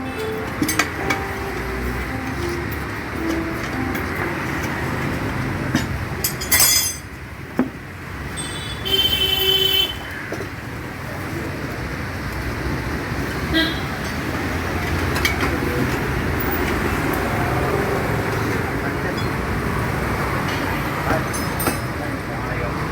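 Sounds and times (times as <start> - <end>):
road traffic rumbling: 0.0 - 22.9
vehicle horn tooting: 8.4 - 10.2, 13.5 - 14.0.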